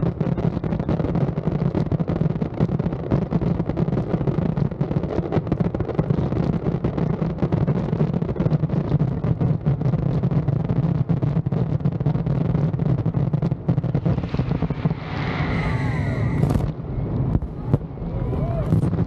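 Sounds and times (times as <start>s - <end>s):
fireworks bangs and crackling: 0.0s - 19.0s
screaming firework whistles: 14.0s - 16.7s, 17.5s - 19.0s.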